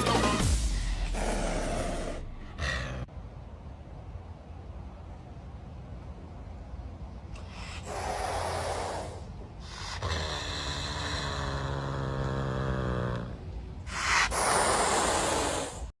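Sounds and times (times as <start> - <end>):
wild cat hissing: 0.8 - 3.1, 7.4 - 15.9
wild cat low growl: 1.0 - 3.1, 7.4 - 15.8.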